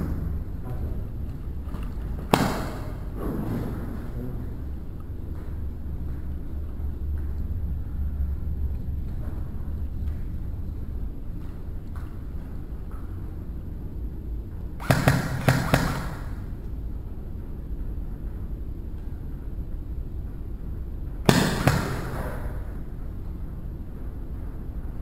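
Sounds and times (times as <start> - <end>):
airsoft gun firing: 2.3 - 3.0, 14.8 - 16.4, 21.3 - 22.4.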